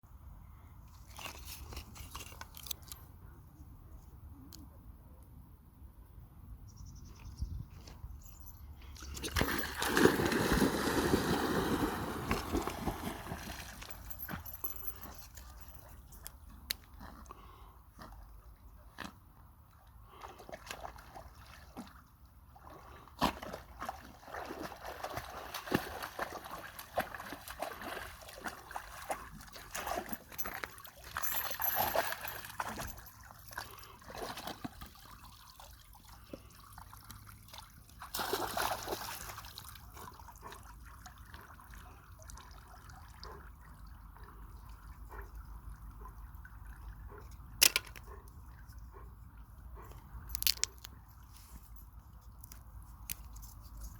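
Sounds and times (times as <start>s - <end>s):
water sloshing and splashing: 8.8s - 16.4s, 19.7s - 53.2s.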